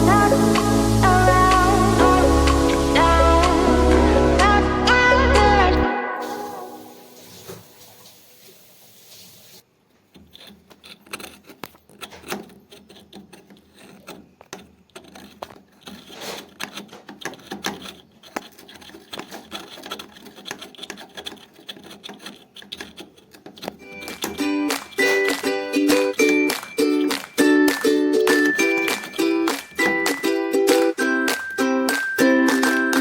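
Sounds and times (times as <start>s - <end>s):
background music: 0.0s - 7.2s, 23.8s - 33.0s
rubbing and scraping of parts: 9.9s - 33.0s.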